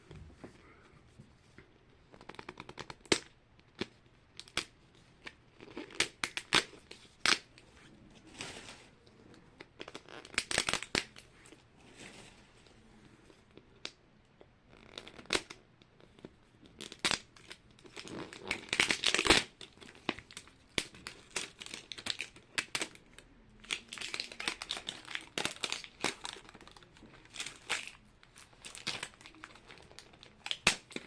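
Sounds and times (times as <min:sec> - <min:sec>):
plastic packaging crinkling: 0:08.2 - 0:11.3, 0:16.8 - 0:31.0.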